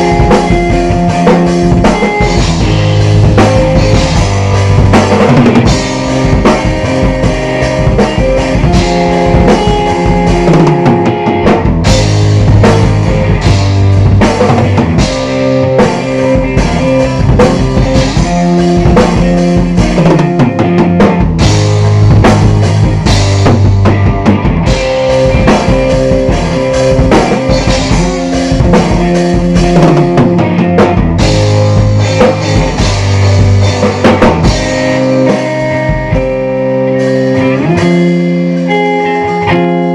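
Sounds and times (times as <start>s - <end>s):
drum kit beat: 0.0s - 39.9s
electric guitar notes: 0.0s - 39.9s.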